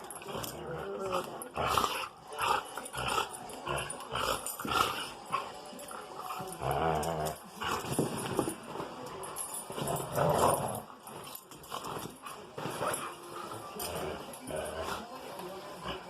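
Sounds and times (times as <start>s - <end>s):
dog growling low: 0.0s - 5.5s, 6.4s - 7.9s, 9.8s - 10.9s.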